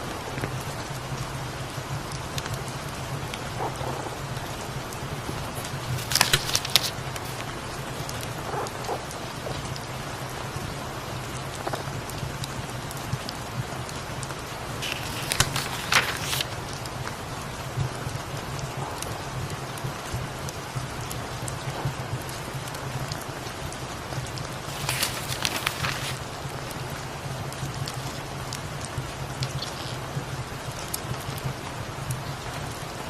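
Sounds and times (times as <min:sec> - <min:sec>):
steady rain falling: 0:00.0 - 0:33.0
book pages turning: 0:04.9 - 0:07.5, 0:14.8 - 0:16.6, 0:24.6 - 0:26.2.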